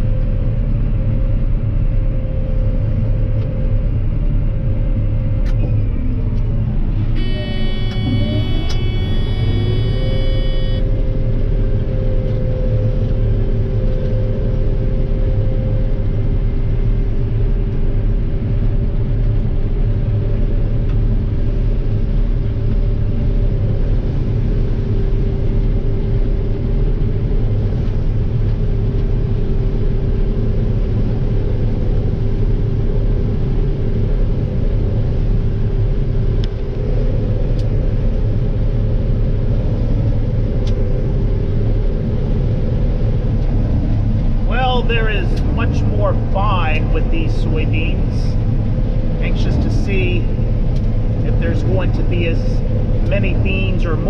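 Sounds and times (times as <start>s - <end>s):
combine harvester engine rumble: 0.0s - 54.0s
steady whine: 0.0s - 54.0s.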